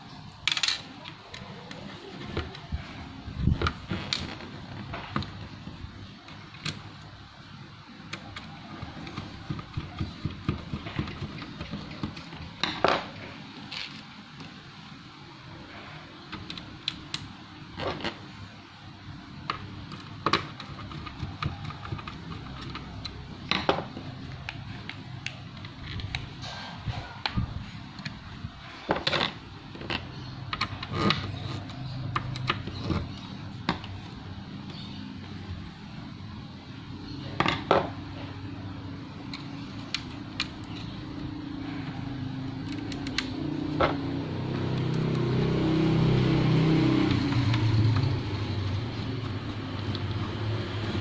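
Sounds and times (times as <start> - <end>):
small hard parts clicking: 19.4 - 26.4.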